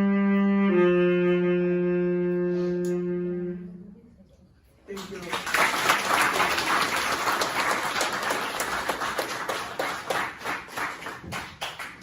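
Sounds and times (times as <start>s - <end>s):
small group clapping: 4.9s - 12.0s.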